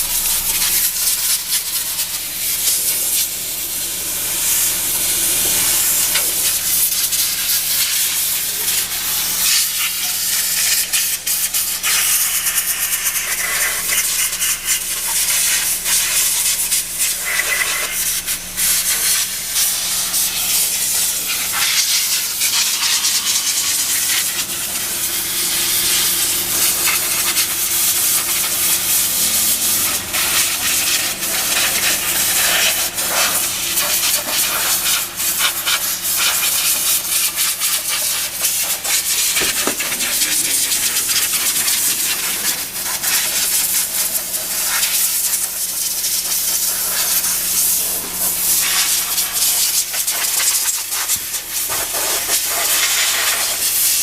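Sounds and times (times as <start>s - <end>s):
loud hiss of rushing air: 35.6s - 51.0s.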